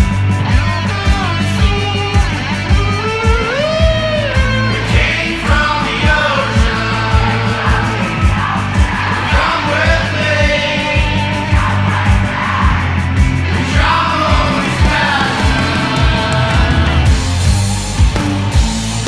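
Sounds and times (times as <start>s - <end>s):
rock band playing: 0.0s - 19.0s
person singing: 4.7s - 17.2s.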